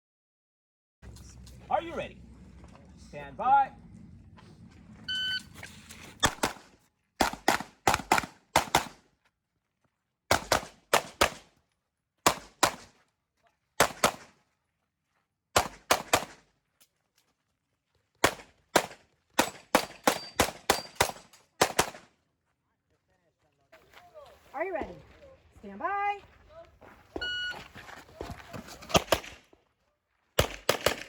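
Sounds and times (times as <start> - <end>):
pistol shots: 6.2 - 9.0, 10.3 - 11.5, 12.2 - 12.9, 13.8 - 14.3, 15.6 - 16.4, 18.2 - 22.1, 28.9 - 29.4, 30.4 - 31.0.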